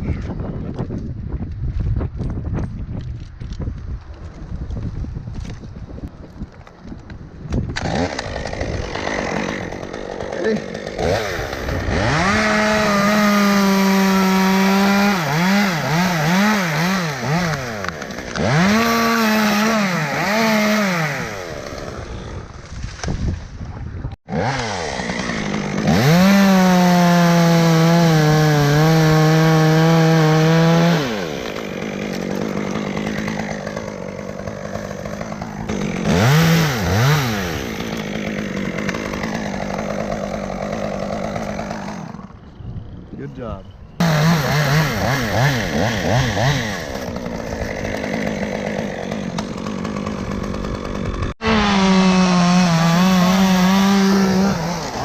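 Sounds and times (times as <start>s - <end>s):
chainsaw revving and idling: 7.7s - 22.7s, 24.3s - 42.4s, 44.0s - 55.0s.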